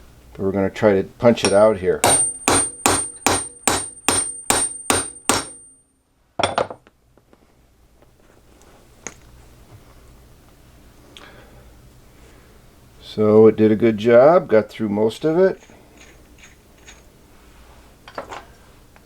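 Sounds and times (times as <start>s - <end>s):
hammer striking metal punch: 1.4s - 5.8s.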